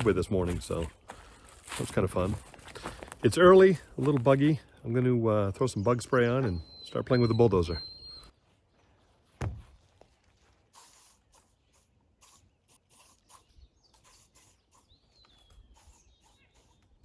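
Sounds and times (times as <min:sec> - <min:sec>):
thump: 0:09.4 - 0:09.8.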